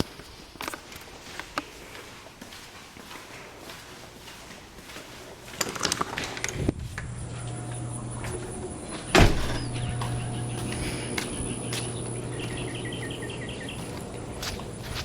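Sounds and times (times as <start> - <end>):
door sliding scrape: 6.2 - 12.1
door shutting thud: 6.4 - 12.0
low hum: 6.4 - 15.0
insects whining: 7.0 - 15.0
door latch clicking: 9.1 - 9.8.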